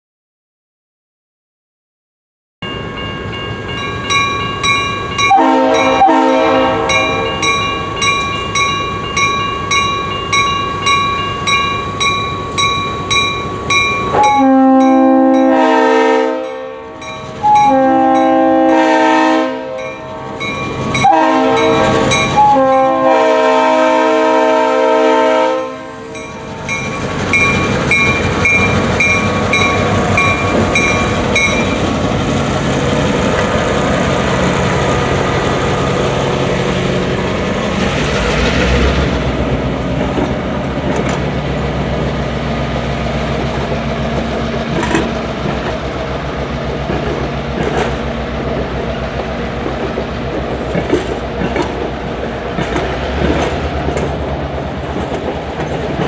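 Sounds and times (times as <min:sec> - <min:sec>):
locomotive bell ringing: 0:02.6 - 0:24.7, 0:25.3 - 0:37.2
train running rumble: 0:02.9 - 0:16.1, 0:17.0 - 0:56.0
locomotive air horn blasts: 0:05.2 - 0:08.2, 0:14.1 - 0:26.8.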